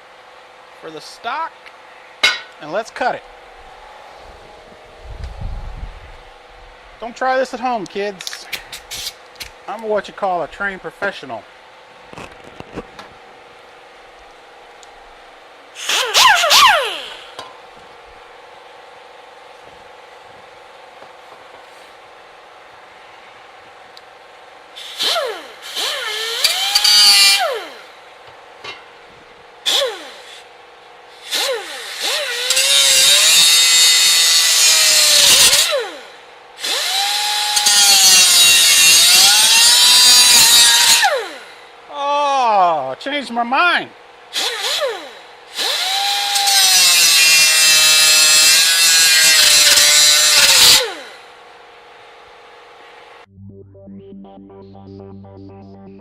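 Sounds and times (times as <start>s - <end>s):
tool cutting into steel: 15.8s - 17.4s, 24.8s - 27.8s, 29.7s - 30.4s, 31.2s - 36.0s, 36.6s - 41.4s, 44.4s - 51.2s
power tool whining: 15.8s - 17.5s, 24.8s - 28.2s, 29.6s - 41.8s, 44.3s - 52.2s.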